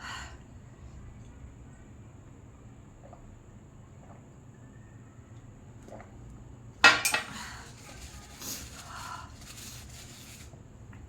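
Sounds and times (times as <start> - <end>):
dishes and cutlery clattering: 6.8 - 7.4.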